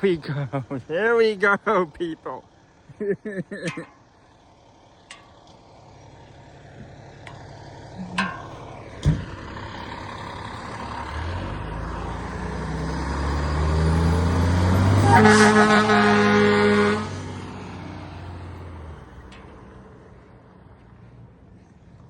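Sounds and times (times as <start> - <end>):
fire truck engine revving: 4.3 - 19.9
thump: 8.2 - 9.4
truck air horn blasting: 15.0 - 17.3.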